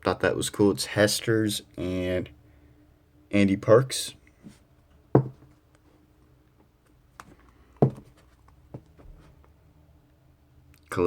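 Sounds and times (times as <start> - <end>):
knocks and taps on a book: 5.2 - 5.4, 7.8 - 8.1.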